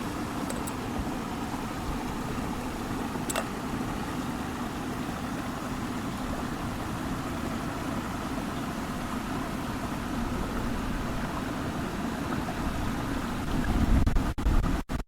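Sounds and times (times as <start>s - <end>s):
sharp click: 3.3s - 3.5s
wind buffeting microphone: 12.6s - 14.8s.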